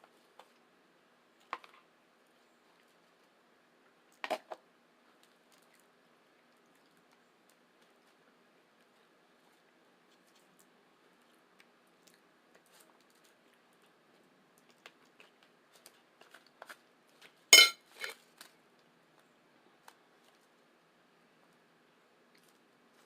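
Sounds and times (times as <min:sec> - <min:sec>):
chewing mouth clicks and smacks: 0:10.1 - 0:14.0, 0:14.6 - 0:16.6.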